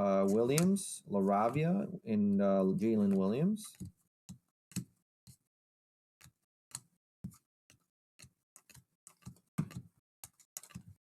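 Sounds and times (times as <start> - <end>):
cards tapping and clicking: 0.2 - 0.8, 3.0 - 5.0, 6.2 - 11.0.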